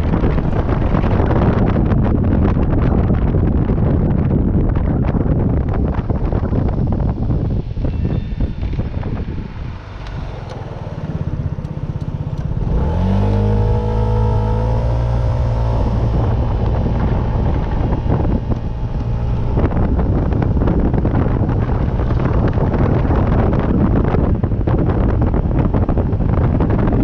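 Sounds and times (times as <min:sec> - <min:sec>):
constant rushing noise: 0:00.0 - 0:27.0
vehicle engine accelerating: 0:05.4 - 0:27.0.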